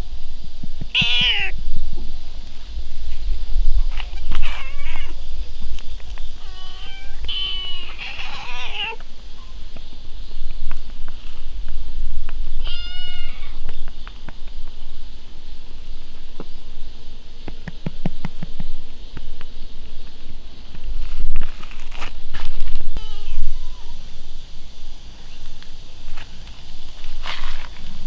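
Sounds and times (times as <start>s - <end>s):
cat meowing: 0.9s - 1.6s, 3.9s - 5.2s, 6.4s - 9.0s, 12.6s - 13.6s, 23.0s - 24.0s.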